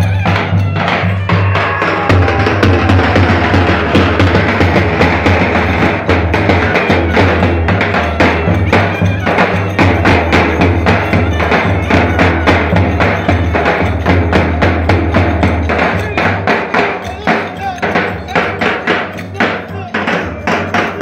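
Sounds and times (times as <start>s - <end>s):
bass drum beat: 0.7s - 9.1s.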